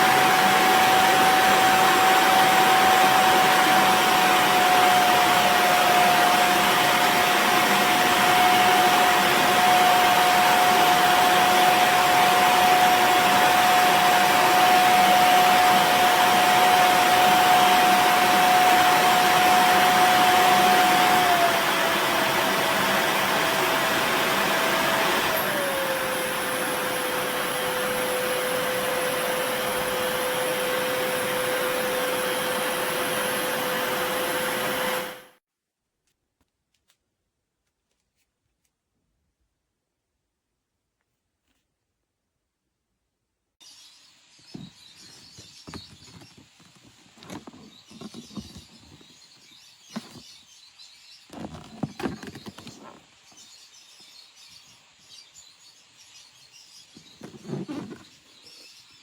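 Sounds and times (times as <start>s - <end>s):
hair dryer blowing: 0.0s - 35.4s.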